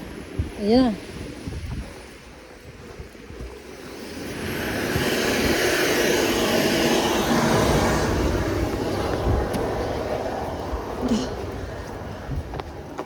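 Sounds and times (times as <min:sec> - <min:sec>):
motor vehicle noise: 0:03.8 - 0:13.0.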